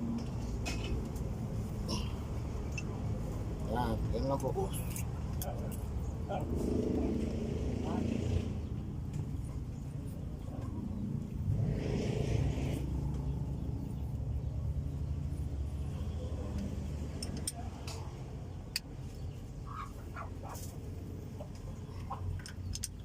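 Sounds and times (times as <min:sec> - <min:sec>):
low mechanical engine rumble: 0:00.0 - 0:23.0
hand tools clicking on metal: 0:17.1 - 0:18.1.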